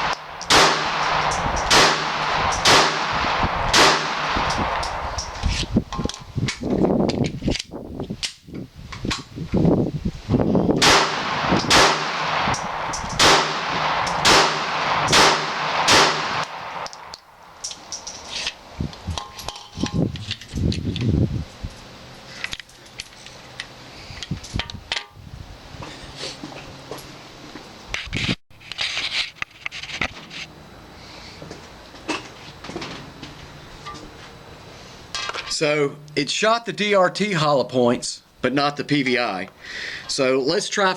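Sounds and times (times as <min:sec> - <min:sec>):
pistol shots: 0:00.0 - 0:05.0, 0:10.8 - 0:17.1.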